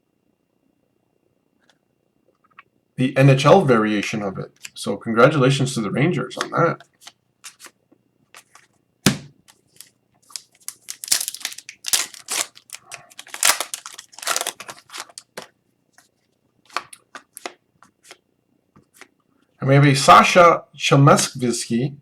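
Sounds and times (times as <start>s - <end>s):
cards rustling: 6.4s - 7.8s, 8.4s - 16.1s, 16.7s - 18.2s
foil wrapper crinkling and tearing: 9.5s - 15.5s.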